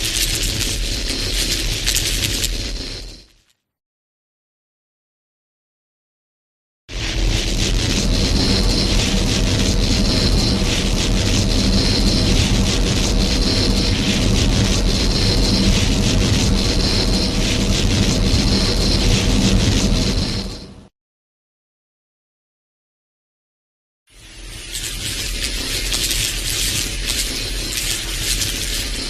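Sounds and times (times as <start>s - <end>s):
machine-like rumble with low drone: 0.0s - 3.3s, 6.9s - 20.9s, 24.2s - 29.0s
pulsing high tone: 0.0s - 3.3s, 6.9s - 20.9s, 24.2s - 29.0s.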